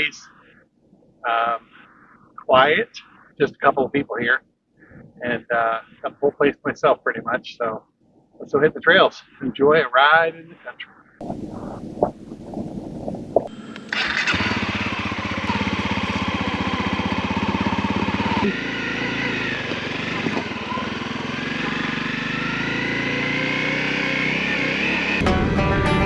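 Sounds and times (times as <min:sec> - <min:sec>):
motorcycle engine starting and running: 0:11.2 - 0:26.0
strummed guitar music: 0:25.2 - 0:26.0.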